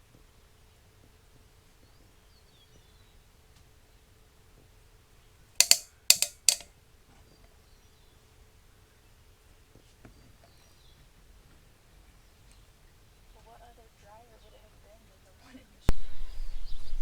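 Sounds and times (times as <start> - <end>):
sharp clacks: 5.6 - 6.7
faint bird chirps: 15.9 - 17.0.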